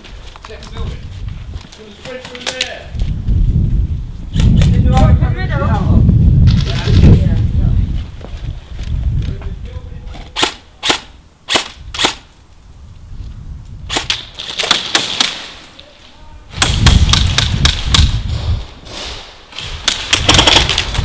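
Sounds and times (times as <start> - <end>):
airsoft guns firing: 10.4 - 12.3, 13.9 - 15.7, 16.5 - 18.3, 18.9 - 21.0.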